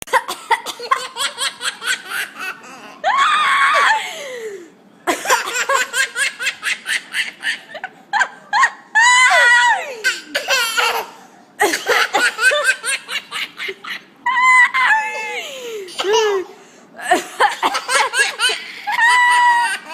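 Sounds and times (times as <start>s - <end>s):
baby laughing hysterically: 0.6s - 4.0s, 5.1s - 15.3s, 17.0s - 19.9s.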